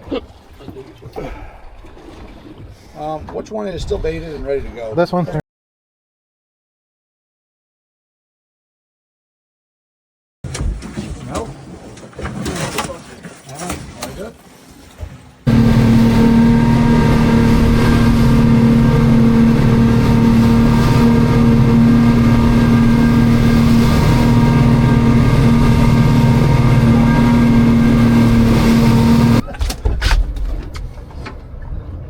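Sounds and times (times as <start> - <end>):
boat engine droning: 15.4 - 29.5.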